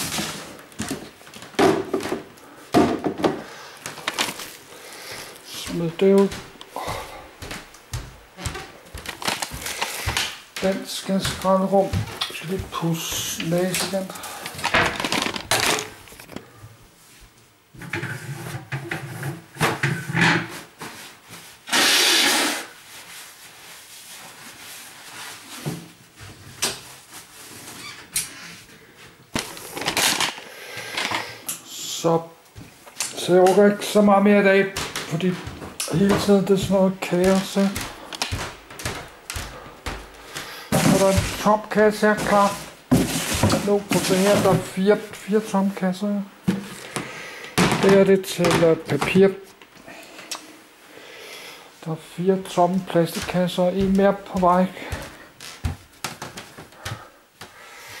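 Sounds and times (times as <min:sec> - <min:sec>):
household things knocking: 0:00.8 - 0:03.5
objects rubbing and scraping: 0:17.8 - 0:25.7, 0:39.4 - 0:44.7.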